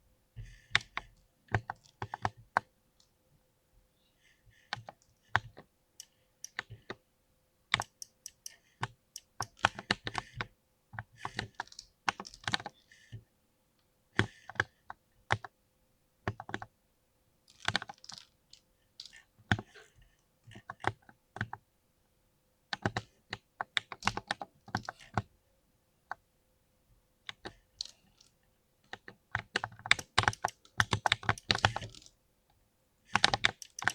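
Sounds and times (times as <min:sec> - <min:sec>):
mechanical keyboard typing: 0:07.7 - 0:08.6, 0:28.9 - 0:32.1, 0:33.1 - 0:33.9.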